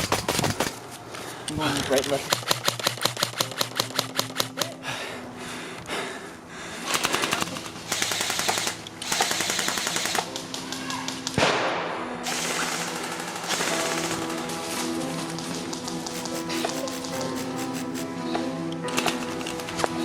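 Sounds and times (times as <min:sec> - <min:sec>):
airsoft guns firing bursts: 0:00.0 - 0:00.8, 0:02.1 - 0:04.6, 0:06.9 - 0:10.4, 0:12.2 - 0:14.4, 0:16.1 - 0:18.1
background music: 0:00.0 - 0:20.0.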